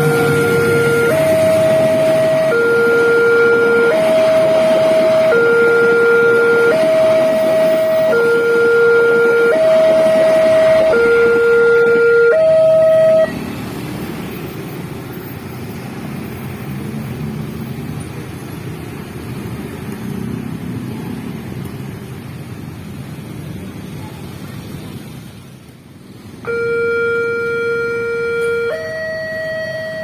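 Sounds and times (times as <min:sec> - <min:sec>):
level crossing two-tone alarm: 0:00.0 - 0:13.4, 0:26.4 - 0:30.0
road traffic noise: 0:00.0 - 0:30.0.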